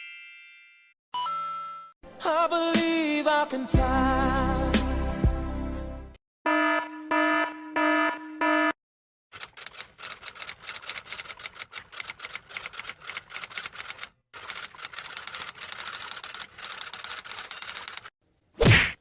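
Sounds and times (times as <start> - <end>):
typing keys clattering: 9.4 - 18.1.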